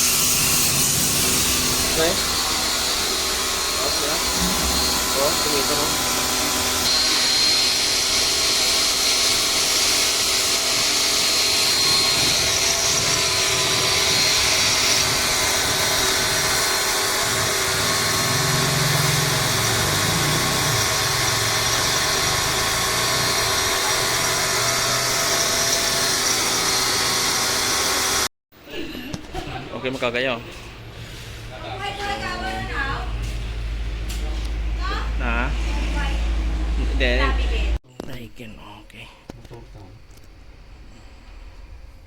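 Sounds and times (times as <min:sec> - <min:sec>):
machine motor whining with hiss: 0:00.0 - 0:28.3
low hum: 0:01.6 - 0:07.0.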